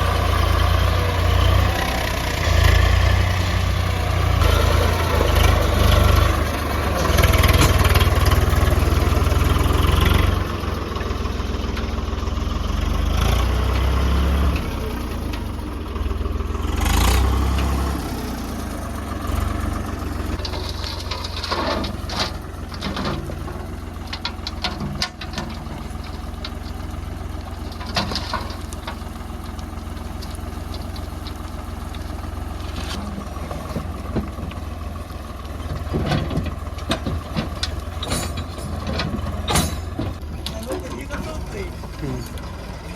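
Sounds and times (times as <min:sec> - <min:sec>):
heavy diesel engine running: 0:00.0 - 0:42.9
metallic clanks: 0:20.4 - 0:26.6, 0:35.7 - 0:42.4.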